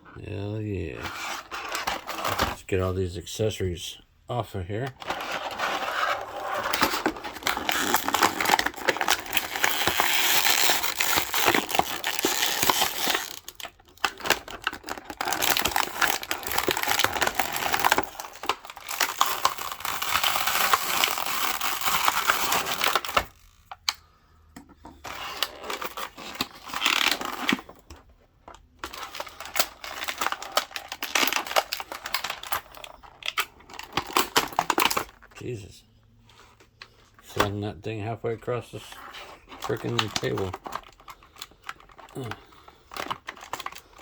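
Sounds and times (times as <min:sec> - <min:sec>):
plastic packaging crinkling: 0:05.0 - 0:23.8, 0:28.8 - 0:35.3, 0:39.6 - 0:44.0.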